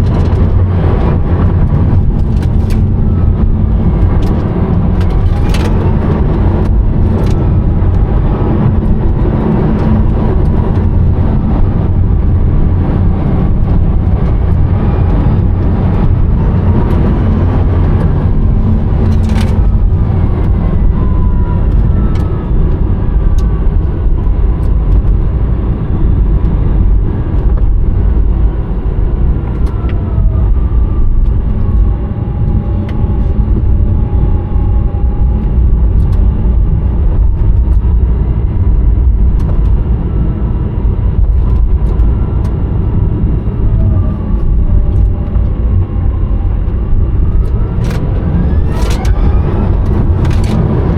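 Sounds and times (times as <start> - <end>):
road rumble inside car: 0.0 - 50.9
electric motor whine: 37.6 - 50.9.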